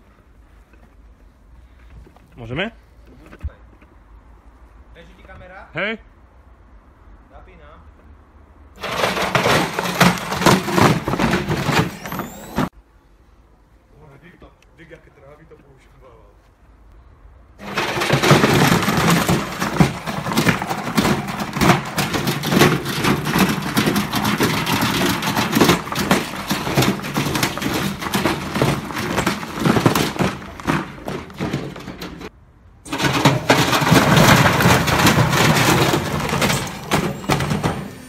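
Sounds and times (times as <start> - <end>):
washing machine drum banging: 17.6 - 32.3, 32.9 - 37.9.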